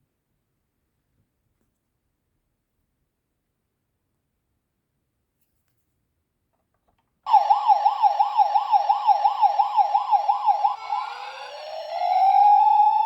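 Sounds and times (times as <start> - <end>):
electronic siren: 7.3 - 13.0.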